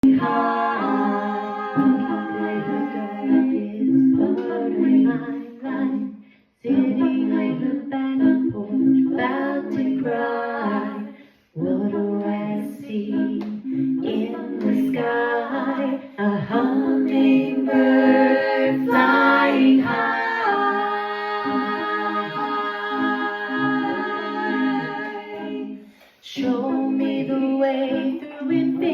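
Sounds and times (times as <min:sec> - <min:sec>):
woman singing: 0:00.0 - 0:28.9.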